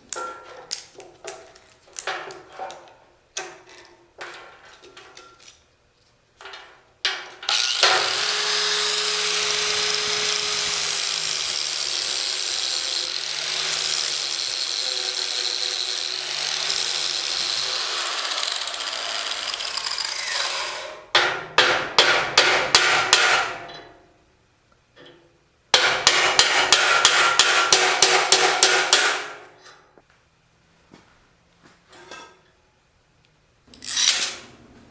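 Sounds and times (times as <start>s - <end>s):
power tool motor running: 7.5s - 20.0s.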